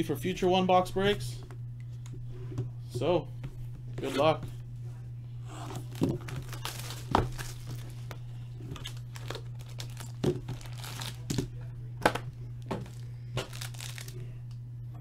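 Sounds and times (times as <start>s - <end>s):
low hum: 0.0s - 15.0s
packaging crinkling and tearing: 5.8s - 8.1s, 8.7s - 11.5s, 12.7s - 14.2s.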